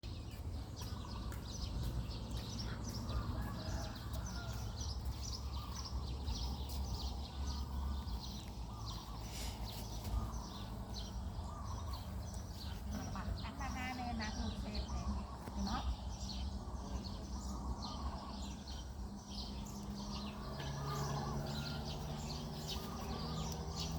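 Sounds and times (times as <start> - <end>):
small birds chirping: 0.0 - 23.9.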